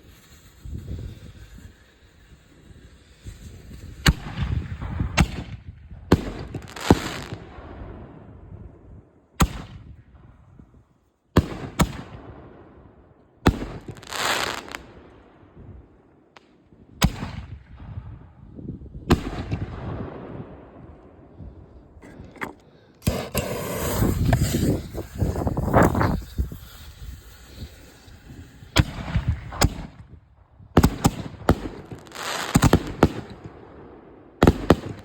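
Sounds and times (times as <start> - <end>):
firework hissing: 0.0 - 4.8, 13.5 - 15.0, 22.1 - 30.2, 30.8 - 33.5
firework bangs: 0.0 - 8.2, 13.5 - 15.2, 22.1 - 35.0.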